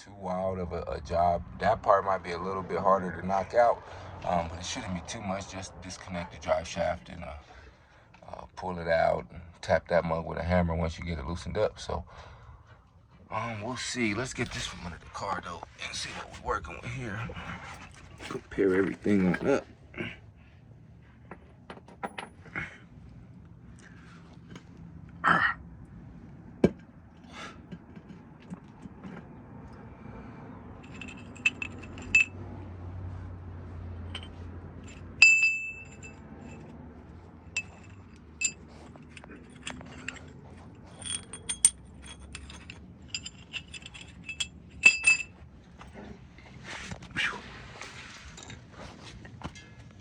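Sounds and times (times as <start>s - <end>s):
metal parts clinking and knocking: 21.3s - 22.6s, 30.8s - 32.4s, 34.0s - 36.7s, 37.5s - 45.9s
sharp ringing metal chinks: 30.8s - 32.6s, 34.1s - 36.7s, 37.5s - 45.5s.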